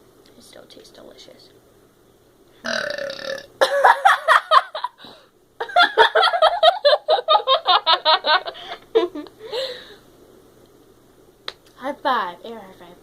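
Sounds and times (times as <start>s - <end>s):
girl burping loudly: 2.6s - 3.5s.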